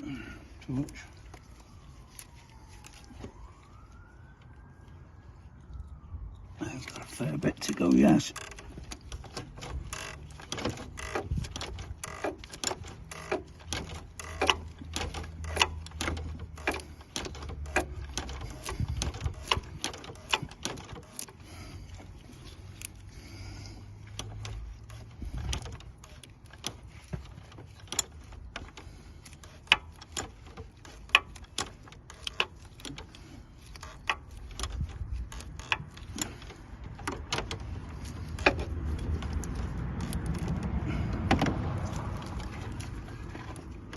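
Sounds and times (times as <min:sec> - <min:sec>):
socket wrench clicks and clanks: 0:08.3 - 0:21.3.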